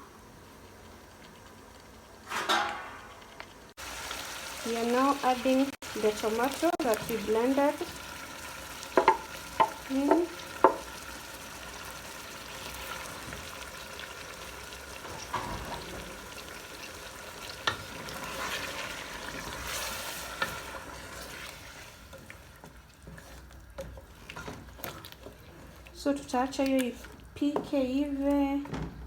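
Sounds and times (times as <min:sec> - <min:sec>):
food sizzling in a pot: 0:00.0 - 0:27.0.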